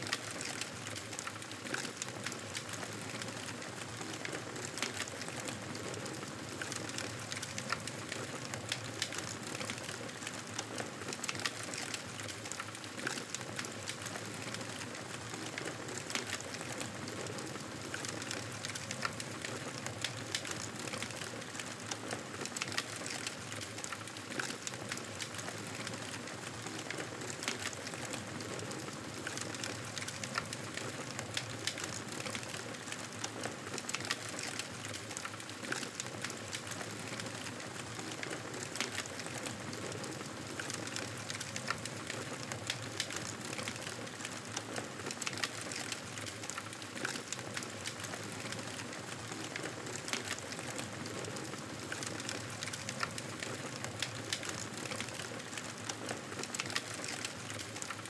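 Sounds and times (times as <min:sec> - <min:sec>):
campfire crackling: 0:38.0 - 0:58.0.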